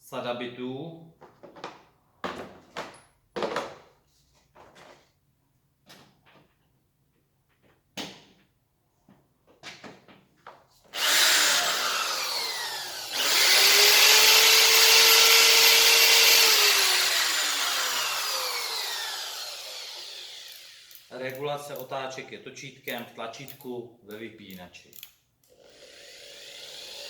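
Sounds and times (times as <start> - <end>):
hammer drill motor whine: 11.0 - 21.1, 25.5 - 27.0.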